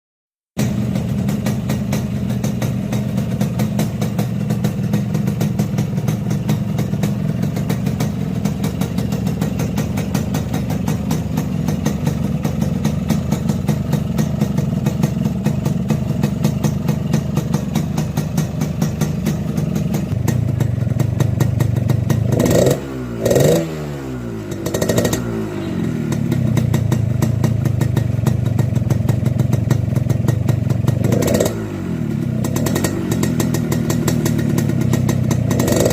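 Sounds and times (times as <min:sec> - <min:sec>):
two-stroke motorcycle engine idling: 0:00.6 - 0:35.9
engine revving: 0:22.0 - 0:27.2, 0:30.9 - 0:35.9.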